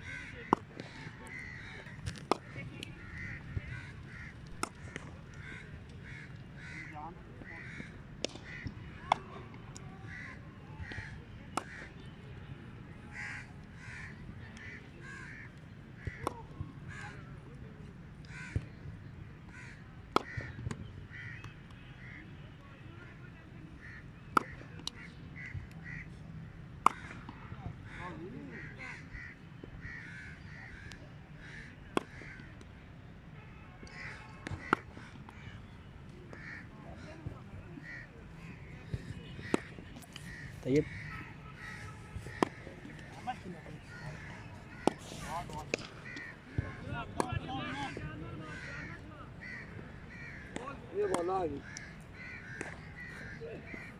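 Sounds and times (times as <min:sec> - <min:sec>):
crows cawing: 0:00.0 - 0:02.4, 0:03.0 - 0:08.7, 0:10.0 - 0:11.9, 0:13.1 - 0:16.3, 0:18.3 - 0:18.7, 0:19.5 - 0:21.4, 0:23.8 - 0:26.1, 0:26.8 - 0:32.5, 0:33.9 - 0:35.6, 0:36.3 - 0:37.2, 0:37.8 - 0:53.9
cricket bat striking ball: 0:26.8 - 0:27.4, 0:39.4 - 0:39.8, 0:42.2 - 0:43.1, 0:44.7 - 0:46.0, 0:46.6 - 0:47.4, 0:52.6 - 0:52.8
cricket bat hitting ball: 0:42.3 - 0:42.6, 0:44.8 - 0:45.9.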